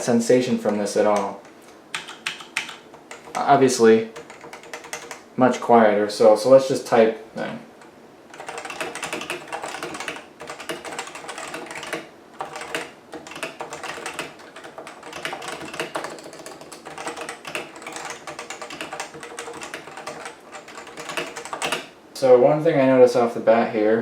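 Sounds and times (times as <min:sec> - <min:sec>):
soft keyboard typing: 0:00.6 - 0:05.2, 0:08.3 - 0:22.0.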